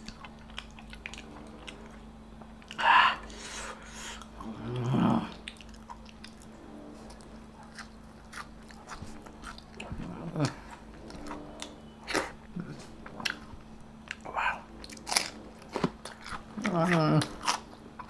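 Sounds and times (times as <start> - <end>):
person chewing and crunching: 0.0 - 18.0.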